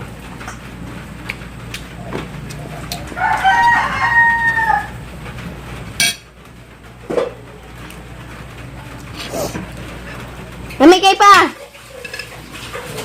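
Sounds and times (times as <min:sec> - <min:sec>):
rooster crowing: 0:03.0 - 0:05.0.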